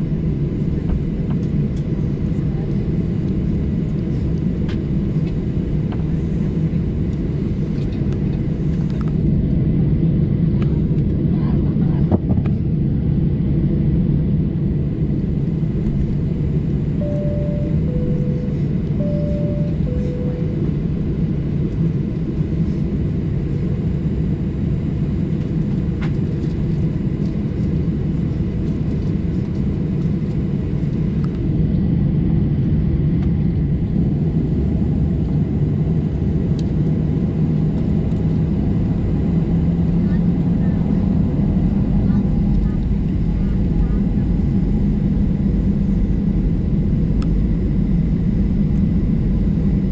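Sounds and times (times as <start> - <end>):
airplane cabin rumble: 0.0 - 49.9.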